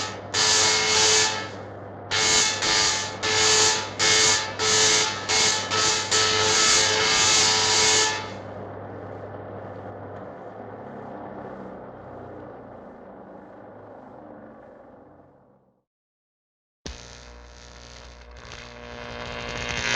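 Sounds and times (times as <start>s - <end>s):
cartoon electric buzz: 0.0s - 8.4s, 16.9s - 19.9s.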